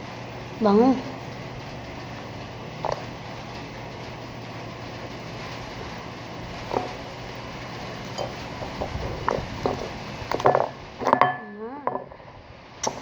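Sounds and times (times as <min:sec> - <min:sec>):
utensils clinking and tapping: 0:08.1 - 0:12.1.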